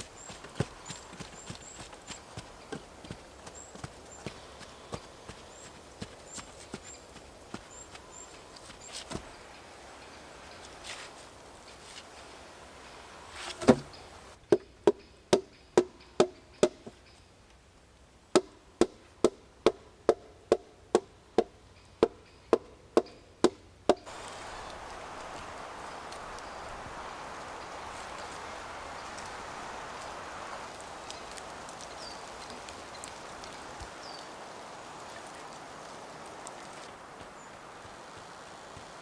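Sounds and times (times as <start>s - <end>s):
steady hiss: 0.0s - 14.4s, 24.0s - 39.0s.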